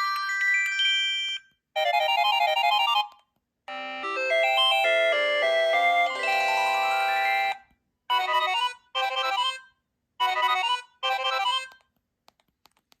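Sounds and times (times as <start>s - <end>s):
electronic phone ringtone: 3.7s - 7.6s.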